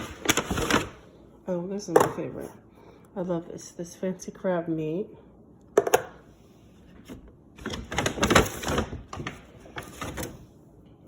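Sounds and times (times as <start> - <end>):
groceries clattering and crinkling: 0.0 - 1.1, 6.9 - 10.5.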